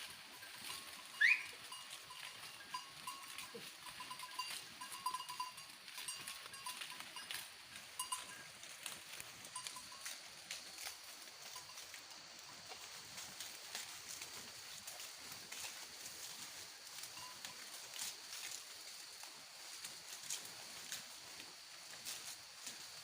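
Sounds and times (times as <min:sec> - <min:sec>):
faint bell clinks: 0:00.2 - 0:08.5, 0:09.5 - 0:10.2, 0:17.0 - 0:17.7.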